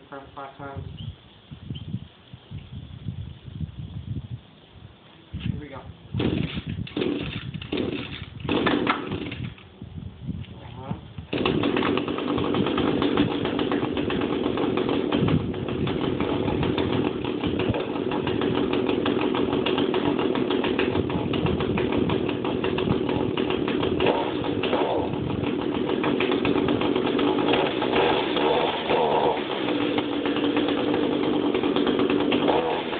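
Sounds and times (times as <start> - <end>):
string trimmer engine running: 6.2 - 9.7, 11.2 - 32.9.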